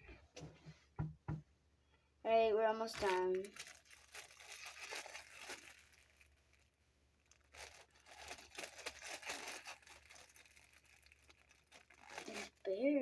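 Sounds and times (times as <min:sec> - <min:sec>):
plastic packaging crinkling: 0:02.8 - 0:12.7.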